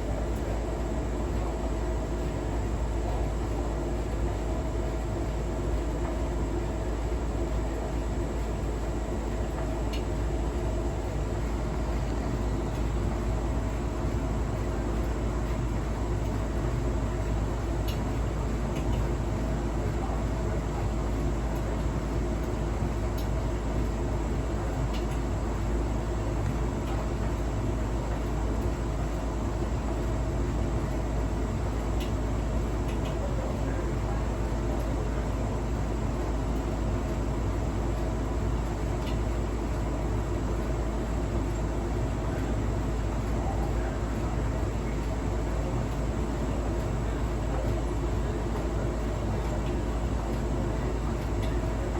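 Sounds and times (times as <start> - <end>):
appliance humming and rumbling: 0.0 - 51.9
faint appliance clicks: 17.7 - 19.2, 24.8 - 25.3, 31.8 - 35.4, 36.2 - 40.7, 41.4 - 51.9.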